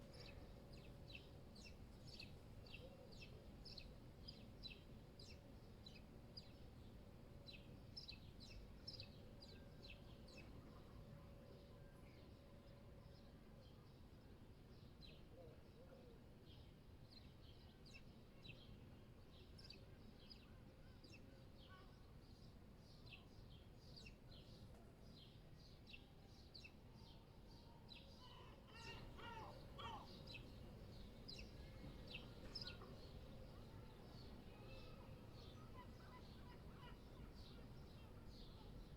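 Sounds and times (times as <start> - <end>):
small birds chirping: 28.0 - 38.9
low city rumble: 28.2 - 38.9.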